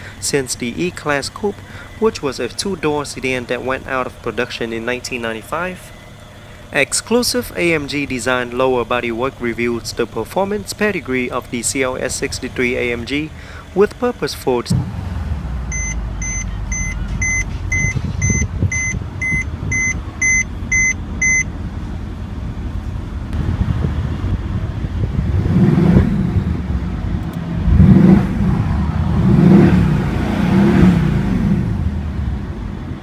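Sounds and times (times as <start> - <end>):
car engine revving: 0.0 - 33.0
electronic car warning beep: 15.7 - 21.5.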